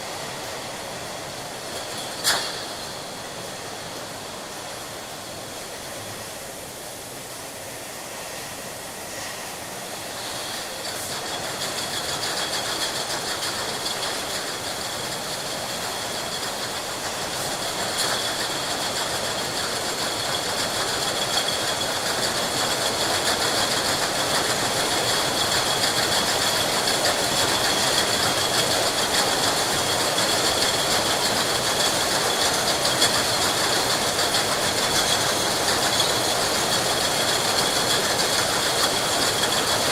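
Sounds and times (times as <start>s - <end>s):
steady machine noise: 9.9s - 39.9s.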